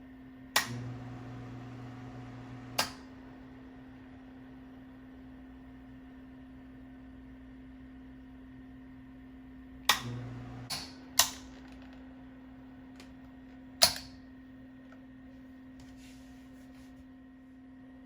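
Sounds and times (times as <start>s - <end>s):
steady electrical hum: 0.0s - 18.0s
switches clicking: 0.6s - 1.0s, 2.7s - 3.1s, 9.9s - 11.8s, 13.8s - 14.2s.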